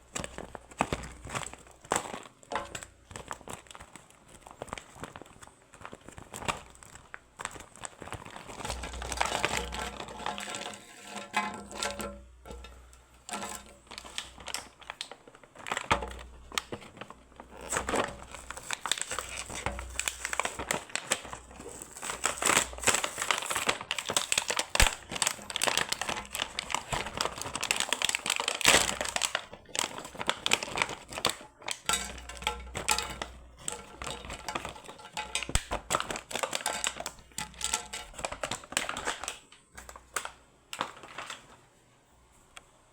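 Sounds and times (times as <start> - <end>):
plastic packaging crinkling: 0.0 - 41.8.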